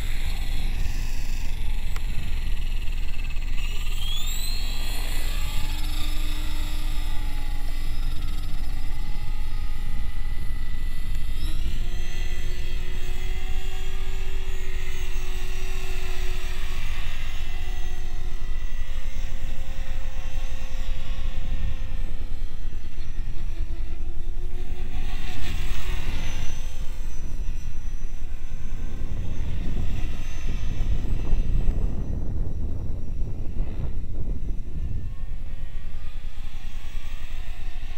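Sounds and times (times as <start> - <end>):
helicopter motor and rotor whine: 0.0 - 37.9.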